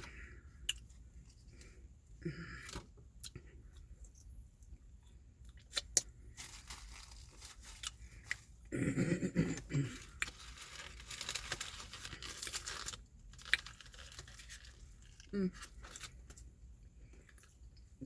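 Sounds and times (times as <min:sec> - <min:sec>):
food packaging crinkling and tearing: 0:05.6 - 0:08.6, 0:09.9 - 0:16.5.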